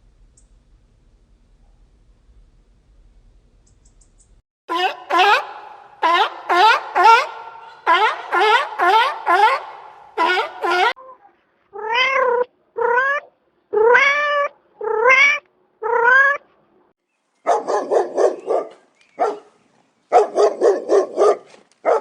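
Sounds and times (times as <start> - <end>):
rapid harsh animal calls: 4.7 - 11.0
cat meowing: 11.8 - 16.4.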